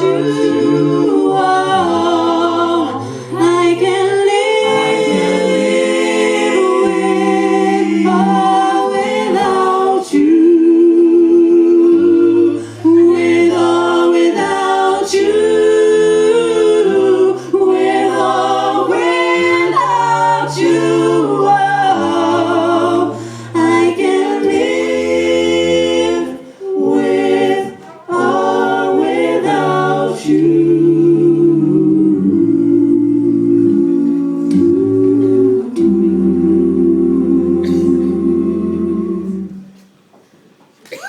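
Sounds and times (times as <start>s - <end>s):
vocal group singing in harmony: 0.0s - 39.9s.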